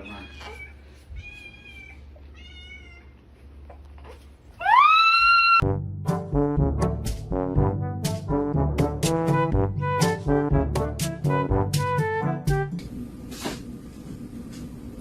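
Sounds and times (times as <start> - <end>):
cat meowing: 0.0 - 3.2
brass music with bouncing beat: 5.6 - 12.8.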